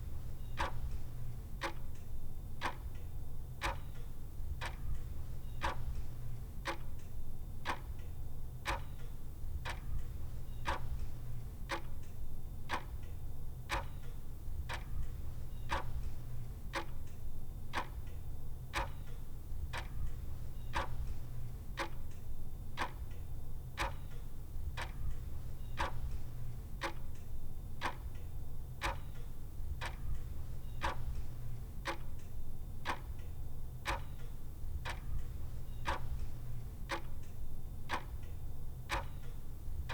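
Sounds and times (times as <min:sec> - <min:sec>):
clock ticking: 0:29.8 - 0:32.2, 0:32.9 - 0:33.1, 0:33.8 - 0:37.3, 0:37.9 - 0:38.2, 0:38.9 - 0:39.3.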